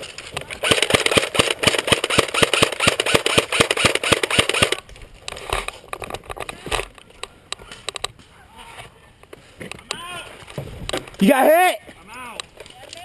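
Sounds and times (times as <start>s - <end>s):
airsoft gun firing full auto: 0.6s - 4.8s.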